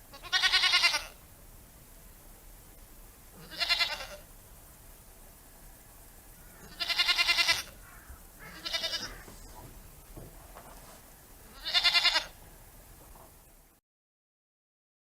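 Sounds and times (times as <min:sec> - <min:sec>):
goat bleating: 0:00.1 - 0:01.2, 0:03.4 - 0:04.2, 0:06.6 - 0:09.4, 0:11.4 - 0:12.4.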